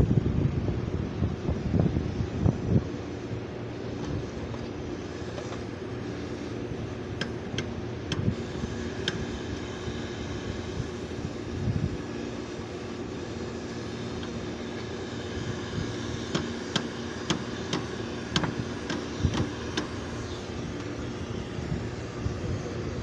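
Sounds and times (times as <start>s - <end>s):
compressor humming: 0.0s - 23.0s
sharp clicks: 7.2s - 8.4s, 9.0s - 9.2s.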